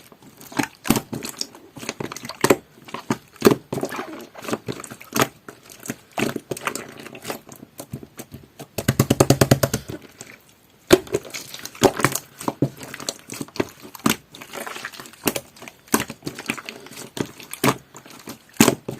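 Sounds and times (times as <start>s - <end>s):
slime squeezed by hand: 0.5s - 5.3s.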